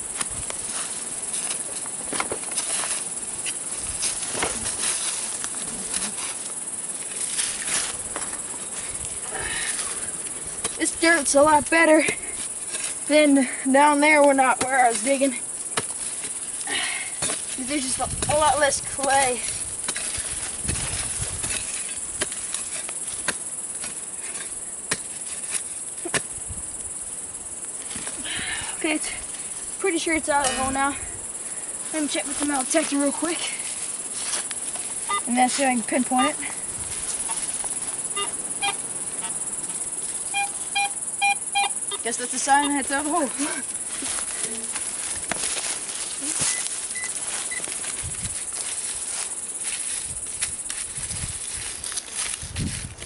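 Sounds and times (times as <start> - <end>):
digging tool crunching dirt: 0.0 - 26.4
high drone of insects: 0.0 - 53.0.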